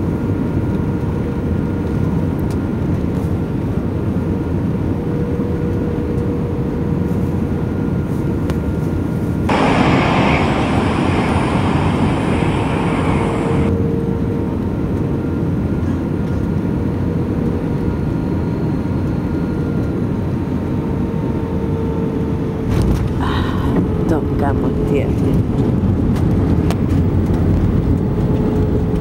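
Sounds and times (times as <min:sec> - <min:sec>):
airliner cabin engine drone: 0:00.0 - 0:29.0
rush of hiss: 0:09.5 - 0:13.7.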